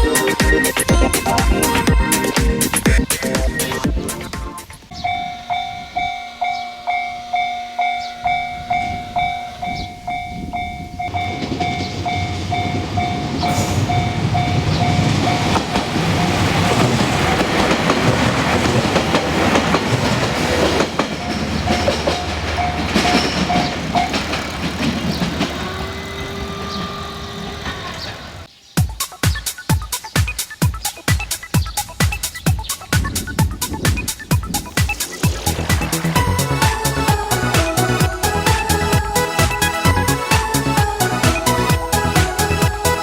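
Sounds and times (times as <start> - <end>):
level crossing warning bell: 0.0 - 3.8, 4.7 - 18.2, 19.4 - 28.5, 35.4 - 43.0
train passing with wheel clatter: 0.0 - 28.5, 31.4 - 43.0.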